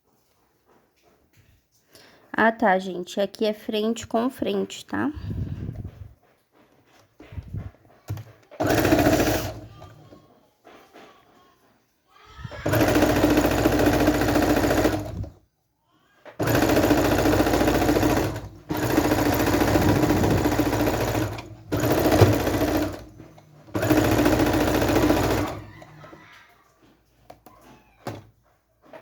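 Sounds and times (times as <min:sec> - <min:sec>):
sewing machine stitching: 0:07.2 - 0:10.2, 0:12.4 - 0:15.4, 0:16.3 - 0:26.4.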